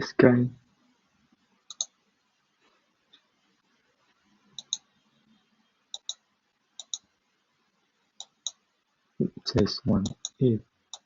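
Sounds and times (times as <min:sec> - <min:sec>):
computer mouse clicking: 0:01.7 - 0:02.0, 0:04.6 - 0:04.9, 0:05.9 - 0:06.2, 0:06.8 - 0:07.1, 0:08.2 - 0:08.6, 0:10.0 - 0:11.0.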